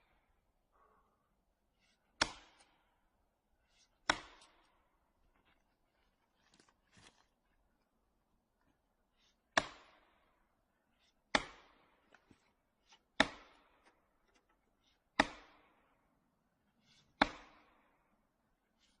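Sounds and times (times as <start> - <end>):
axe chopping wood: 2.0 - 2.9, 4.0 - 4.8, 9.5 - 10.2, 11.3 - 12.2, 13.1 - 13.9, 15.1 - 15.8, 17.2 - 17.8.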